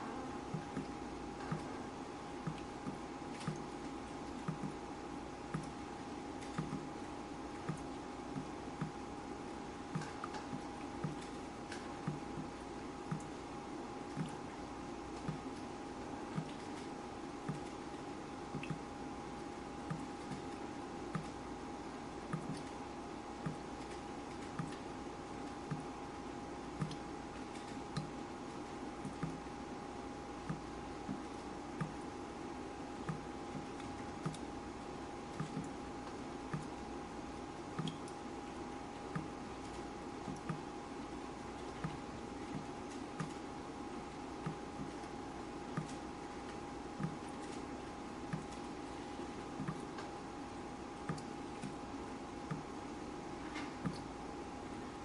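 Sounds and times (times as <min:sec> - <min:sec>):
faint hum and hiss: 0:00.0 - 0:55.0
water dripping: 0:02.4 - 0:04.8, 0:09.9 - 0:13.4, 0:17.5 - 0:18.9, 0:37.7 - 0:39.4.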